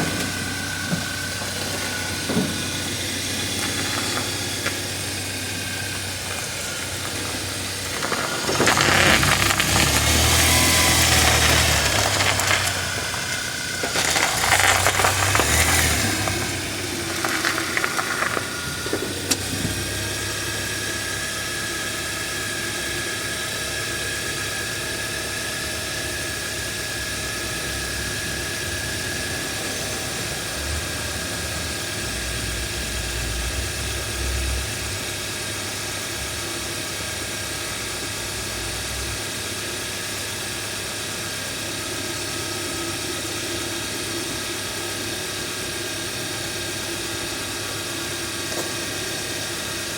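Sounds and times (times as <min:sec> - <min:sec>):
loud rattling: 0:00.0 - 0:21.2
car engine and road noise: 0:00.0 - 0:49.9.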